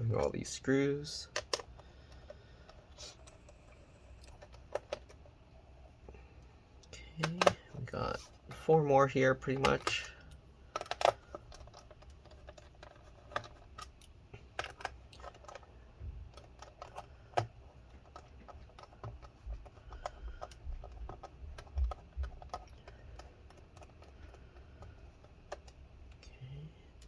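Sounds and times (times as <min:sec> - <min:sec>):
screwdriver clicking on plastic: 0:09.5 - 0:15.7, 0:16.3 - 0:25.8.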